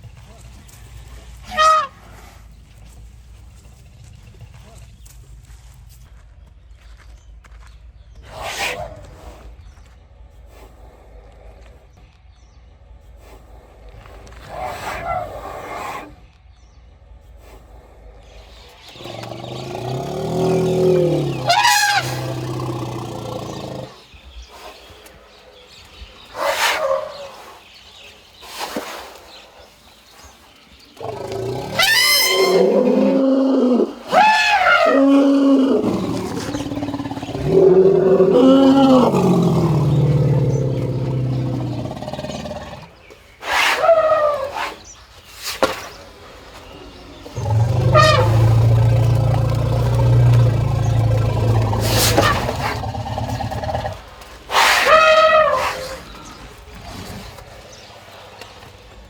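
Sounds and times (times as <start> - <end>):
elephants trumpeting and squeaking: 1.4 - 2.0, 14.5 - 16.1, 19.0 - 24.0, 26.3 - 27.4, 31.0 - 42.8, 43.4 - 45.0, 47.3 - 57.3
elephants roaring: 18.2 - 24.1, 31.0 - 44.8, 47.1 - 57.5.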